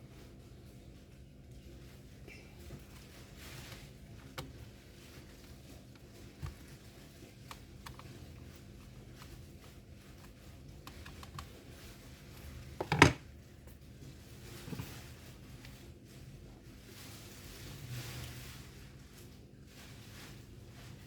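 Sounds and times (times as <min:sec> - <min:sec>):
parts clattering: 0:12.7 - 0:13.2.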